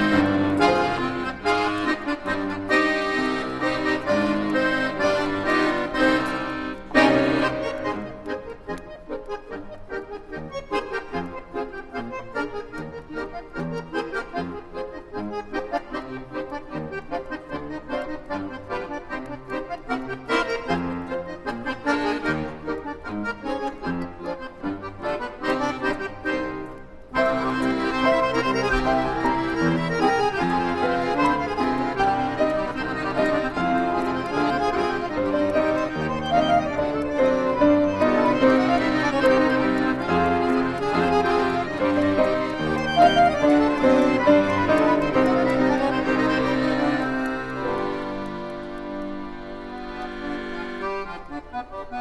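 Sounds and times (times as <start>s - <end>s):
electronic keyboard melody: 0.0s - 52.0s.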